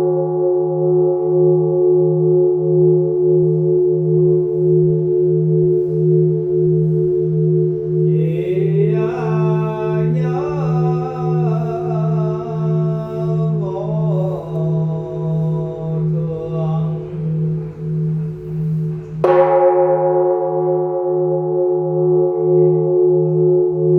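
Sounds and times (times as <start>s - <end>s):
temple bell ringing hum: 0.0s - 23.9s
person chanting: 6.9s - 19.6s.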